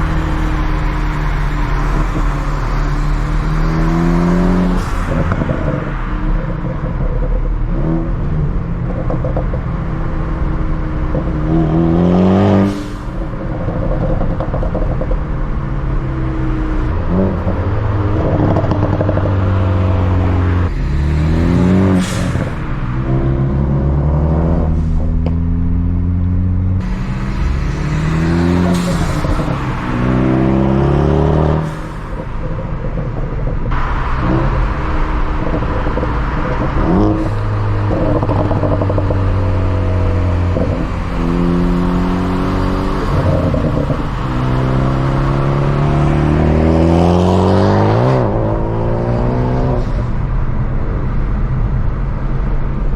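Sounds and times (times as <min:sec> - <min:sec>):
car engine revving and shifting: 0:00.0 - 0:50.4
exhaust pops and crackles: 0:08.5 - 0:09.8, 0:13.5 - 0:15.4, 0:37.9 - 0:39.5.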